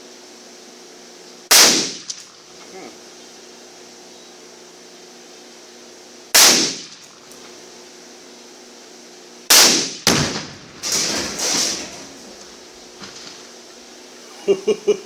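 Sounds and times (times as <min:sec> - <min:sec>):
rifle shots with echo: 0:01.5 - 0:02.1, 0:06.4 - 0:07.0, 0:09.5 - 0:11.0.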